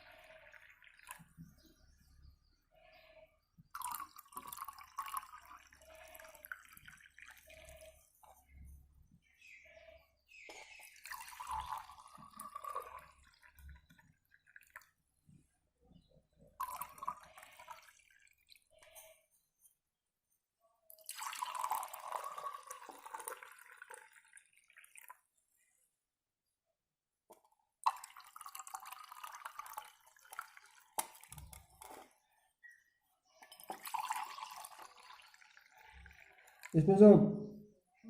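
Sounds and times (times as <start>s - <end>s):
water sloshing and dripping: 10.4s - 19.2s, 33.3s - 36.8s.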